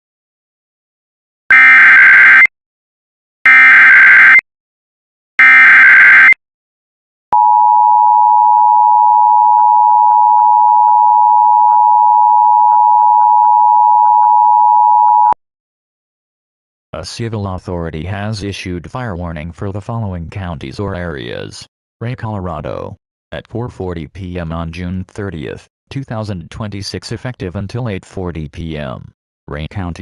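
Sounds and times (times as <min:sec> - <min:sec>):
two-tone alarm: 0:01.5 - 0:02.5, 0:03.5 - 0:04.4, 0:05.4 - 0:06.4, 0:07.4 - 0:15.4.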